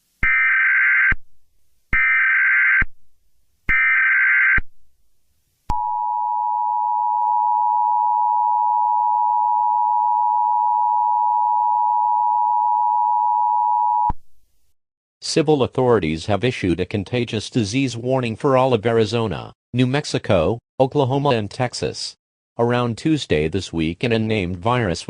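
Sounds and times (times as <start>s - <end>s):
two-tone alarm: 0.2s - 1.2s, 2.0s - 2.9s, 3.7s - 4.6s.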